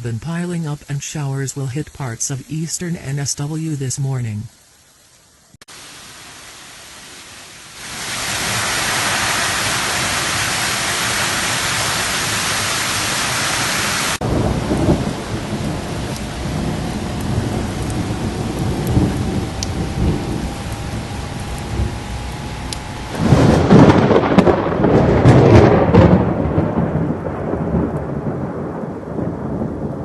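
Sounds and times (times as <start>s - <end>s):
heavy rain downpour: 0.0s - 30.0s
low thunder rumbling: 14.2s - 30.0s.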